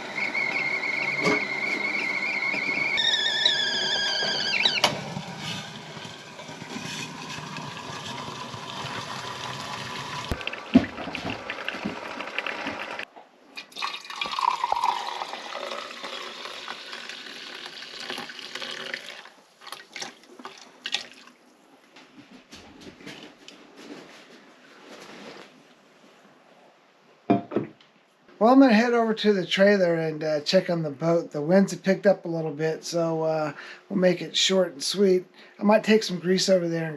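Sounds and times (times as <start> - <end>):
water pouring into a container: 5.2 - 13.0, 13.6 - 21.3.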